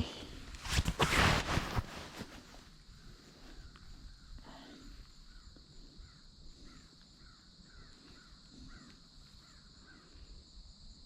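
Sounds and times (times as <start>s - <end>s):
faint crows cawing: 2.9s - 10.4s.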